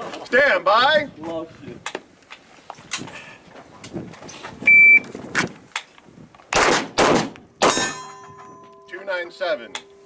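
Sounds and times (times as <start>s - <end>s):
shot timer start beep: 4.7s - 5.0s
handgun shots: 6.5s - 8.0s.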